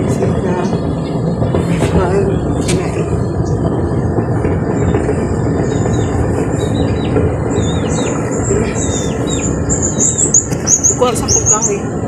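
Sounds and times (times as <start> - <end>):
loud steady rushing noise: 0.0 - 12.0
bird chirping: 4.7 - 11.9.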